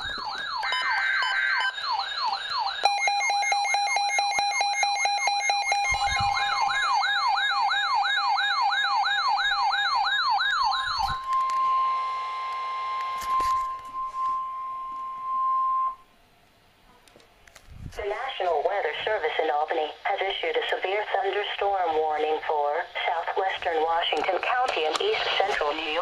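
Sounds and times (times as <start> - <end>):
electronic sirens yelping: 0.0 - 15.9
steady alarm tone: 0.0 - 16.1.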